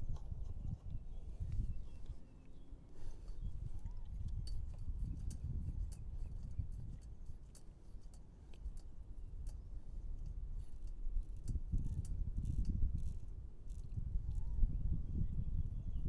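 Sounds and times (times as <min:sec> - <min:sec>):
wind buffeting microphone: 0:00.0 - 0:16.0
light clicks and clinks: 0:03.1 - 0:14.4.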